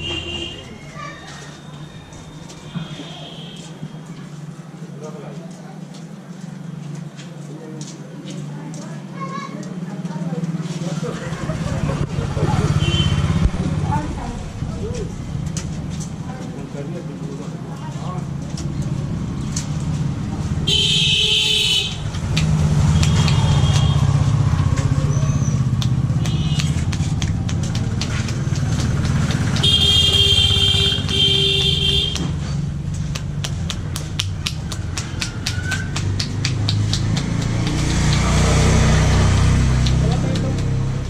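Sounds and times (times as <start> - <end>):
vehicle horn honking: 0.0 - 0.8, 2.6 - 4.1, 12.7 - 13.4, 20.6 - 22.1, 23.1 - 24.2, 26.3 - 26.8, 29.6 - 32.3
vehicle engine running: 9.8 - 41.0.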